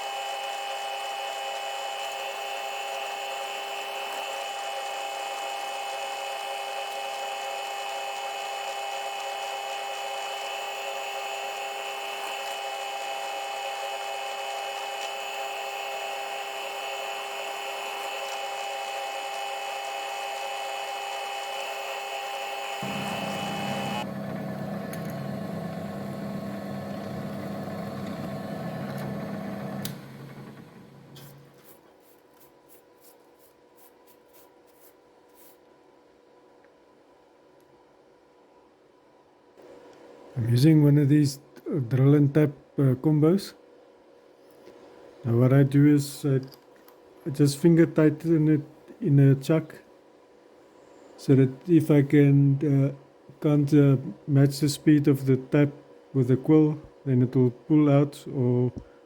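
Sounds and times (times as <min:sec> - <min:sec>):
milling machine motor whine: 0:00.0 - 0:31.5
low machine hum: 0:14.6 - 0:31.5.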